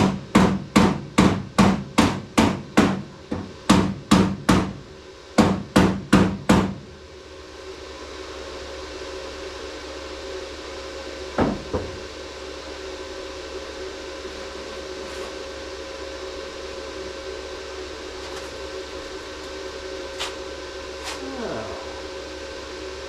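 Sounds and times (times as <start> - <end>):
hammer knocks on metal: 0.0 - 4.8, 5.4 - 6.8, 11.4 - 12.0
machine hum with held tones: 6.7 - 23.0.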